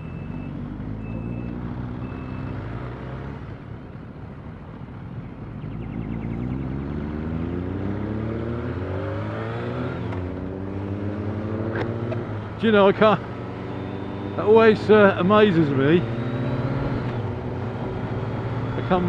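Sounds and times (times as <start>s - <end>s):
motorcycle engine accelerating: 5.0s - 19.0s.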